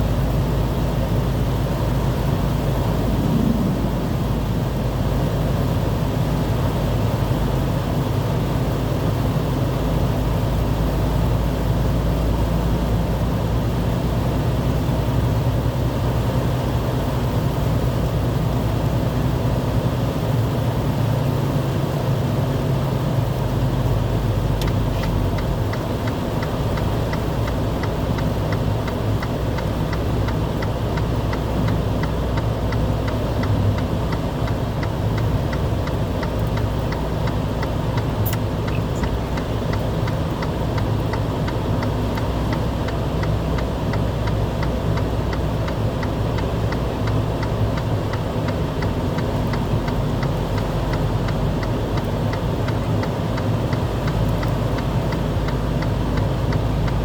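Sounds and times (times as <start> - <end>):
vehicle engine humming: 0.0 - 57.0
regular ticking: 23.3 - 57.0.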